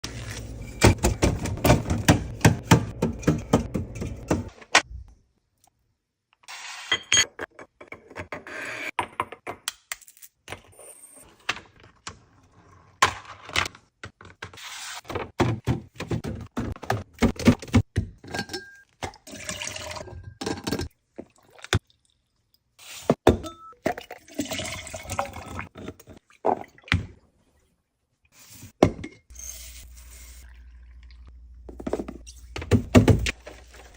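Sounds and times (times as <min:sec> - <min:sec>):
containers and bottles clattering: 0:15.4 - 0:21.8.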